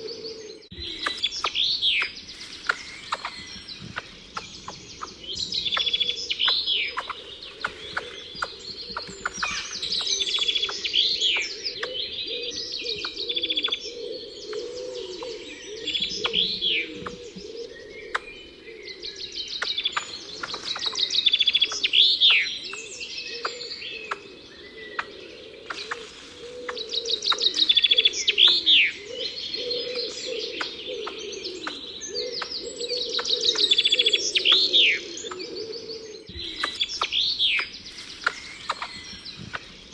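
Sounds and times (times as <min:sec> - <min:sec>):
birds trilling and chirping: 0:00.0 - 0:39.9
soft low bird calls: 0:00.0 - 0:39.9.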